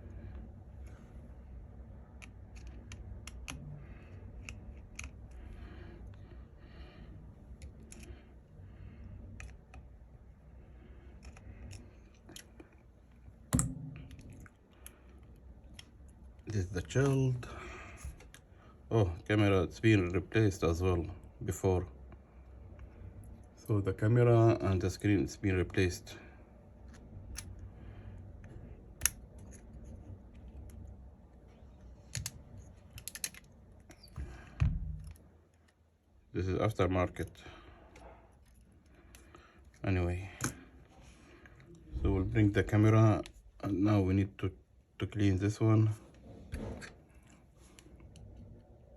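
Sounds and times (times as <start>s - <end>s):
small tools clicking on phone: 2.1s - 5.4s.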